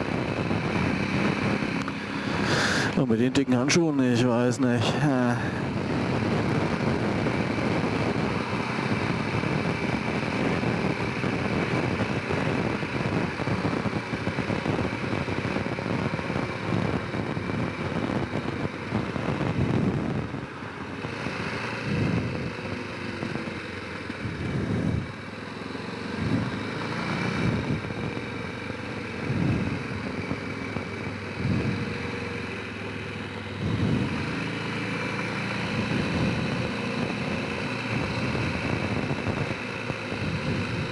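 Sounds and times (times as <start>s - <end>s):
atv engine running: 0.0s - 3.7s, 5.2s - 40.9s.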